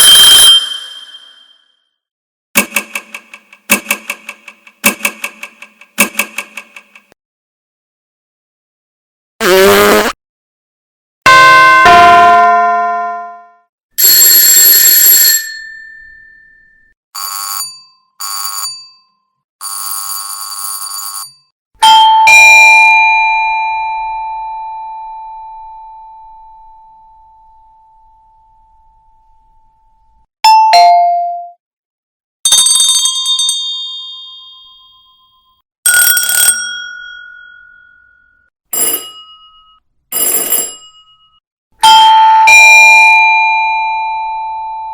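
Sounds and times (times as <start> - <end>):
buzzing doorbell ring: 38.8 - 41.4.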